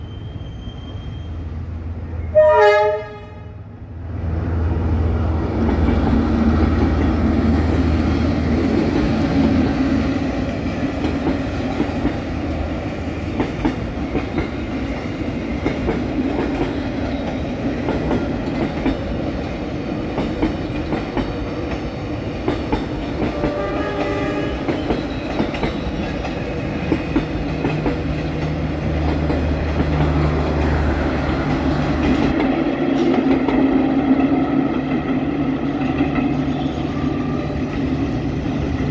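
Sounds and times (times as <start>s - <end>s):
train rumbling past: 0.0s - 38.9s
train horn blast: 2.2s - 3.7s, 23.2s - 25.0s
wheels clicking over rail joints: 10.4s - 36.9s.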